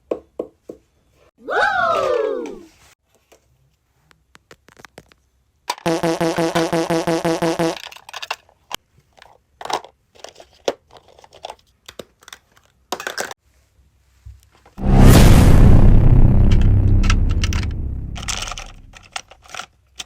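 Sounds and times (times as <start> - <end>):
pulsing buzzy tone: 5.9 - 7.8
objects clicking and tapping: 18.9 - 20.0.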